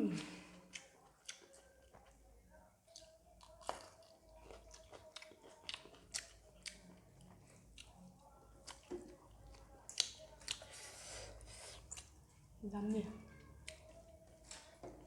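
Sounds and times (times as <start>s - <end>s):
person chewing: 0.0s - 12.5s, 13.3s - 15.0s.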